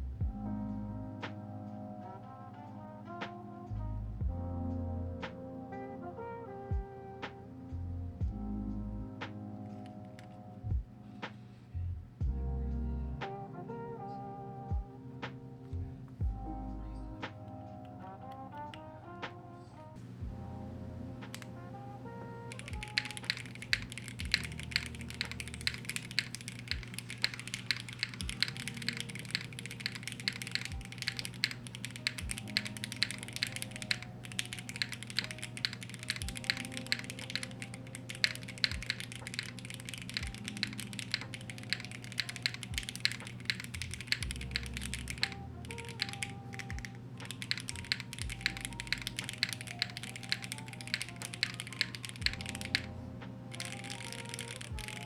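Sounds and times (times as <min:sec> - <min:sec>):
background music: 0:00.0 - 0:55.0
mechanical keyboard typing: 0:22.5 - 0:52.9, 0:53.5 - 0:55.0.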